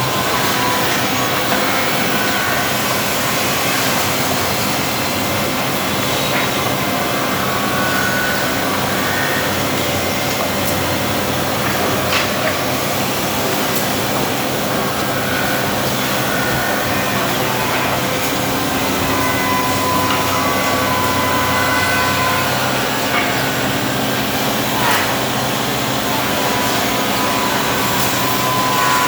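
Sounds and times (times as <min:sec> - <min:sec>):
drilling machine running: 0:00.0 - 0:29.0
short machine whines: 0:14.6 - 0:29.0.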